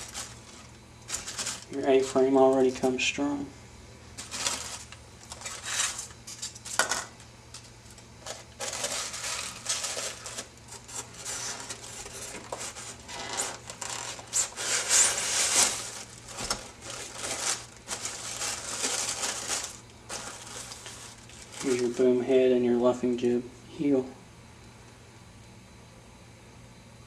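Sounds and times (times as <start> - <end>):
rustling plastic packaging: 0.0 - 3.2, 4.1 - 22.3.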